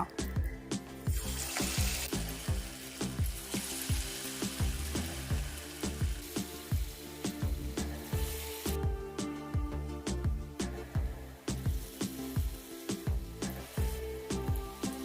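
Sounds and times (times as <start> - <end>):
background music with beat: 0.0 - 15.0
batter sizzling in hot oil: 1.0 - 8.8, 11.3 - 15.0.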